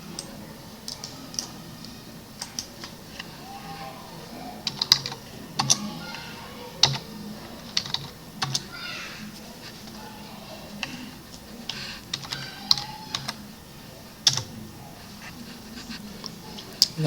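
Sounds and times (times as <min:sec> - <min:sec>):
typing on computer keyboard: 0:00.1 - 0:03.3, 0:04.6 - 0:08.7, 0:10.7 - 0:13.5, 0:14.2 - 0:14.6.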